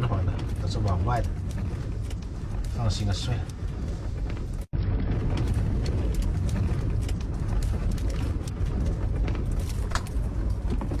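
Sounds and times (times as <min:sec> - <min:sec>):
light clicks and rattles: 0:00.0 - 0:04.7
strong wind buffeting: 0:00.0 - 0:11.0.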